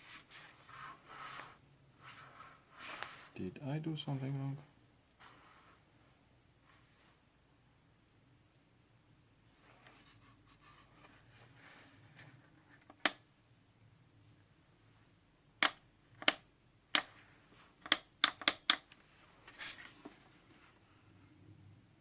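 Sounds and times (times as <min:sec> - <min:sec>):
faint handling rustle: 0:00.0 - 0:03.4, 0:04.1 - 0:07.3, 0:09.5 - 0:12.8, 0:19.0 - 0:21.2
sharp plastic clicks: 0:17.8 - 0:19.0.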